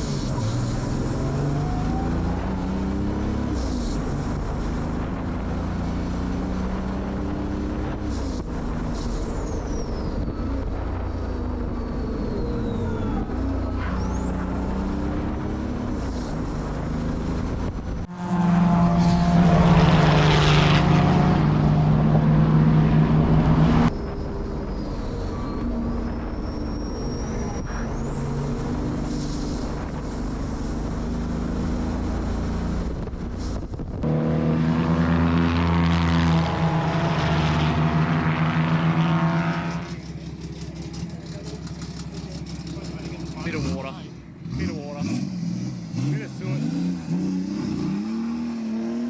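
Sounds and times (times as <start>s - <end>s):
diesel race car engine: 0.0s - 49.0s
faint high turbo whistle: 18.0s - 22.0s, 36.4s - 43.2s.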